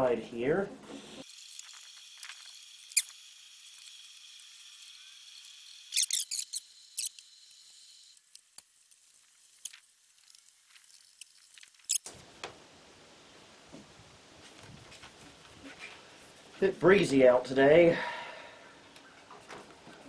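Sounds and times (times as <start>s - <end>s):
eraser squeaking on plastic: 1.6s - 3.2s, 5.9s - 7.3s, 11.8s - 12.0s.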